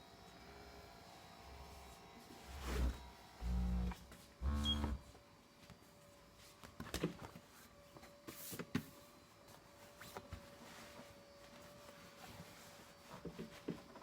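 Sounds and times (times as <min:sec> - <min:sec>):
massage seat humming: 0:00.4 - 0:05.2.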